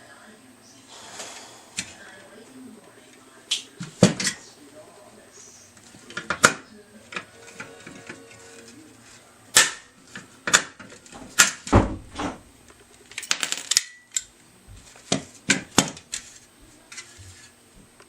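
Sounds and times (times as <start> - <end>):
heavy thud: 11.2 - 12.5.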